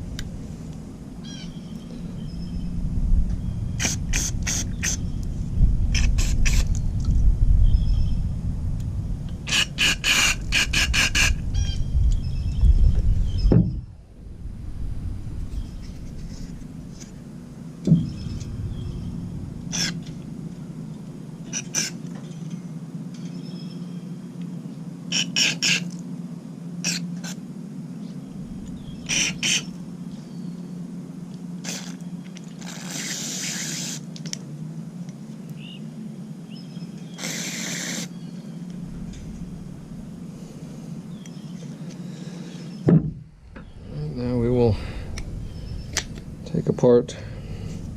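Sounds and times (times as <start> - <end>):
low rumble: 0.0 - 21.5, 27.5 - 31.6, 38.2 - 42.2, 42.9 - 47.9
steady low hum: 0.0 - 47.9
short hissing bursts: 32.6 - 34.1, 37.1 - 38.2.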